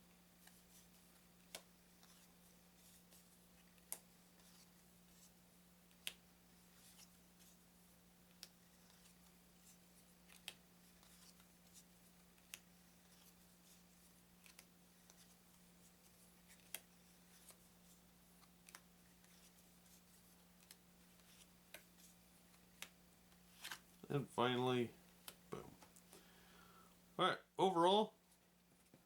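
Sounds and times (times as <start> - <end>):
playing cards clicking: 22.5 - 23.8.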